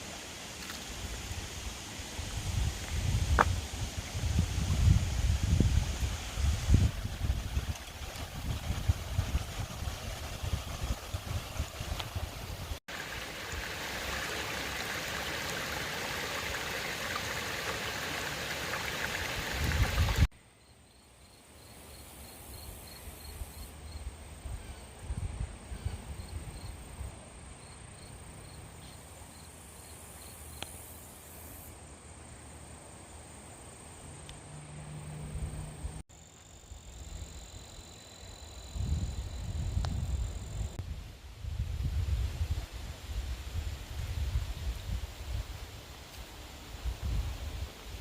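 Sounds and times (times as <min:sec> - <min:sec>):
creek water rushing: 0:06.0 - 0:20.3.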